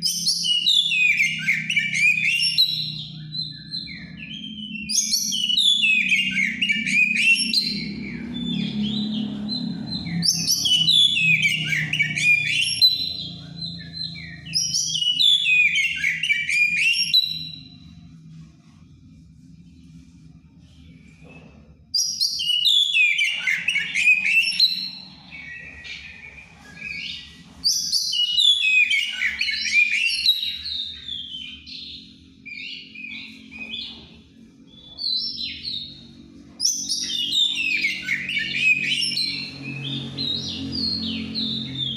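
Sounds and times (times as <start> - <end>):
bird singing whistled phrases: 0.0 - 17.8, 22.0 - 31.9, 36.6 - 41.9.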